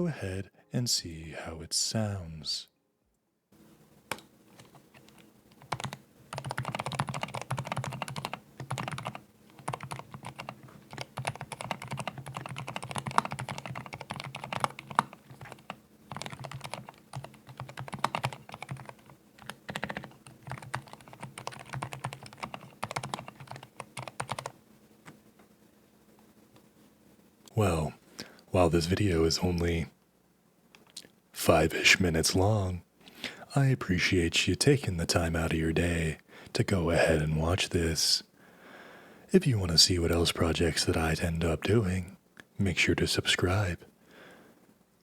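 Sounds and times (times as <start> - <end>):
mechanical keyboard typing: 4.1 - 24.6.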